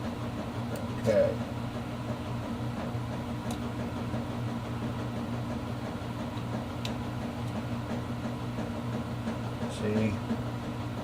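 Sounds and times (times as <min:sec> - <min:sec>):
low machine hum: 0:00.0 - 0:11.0.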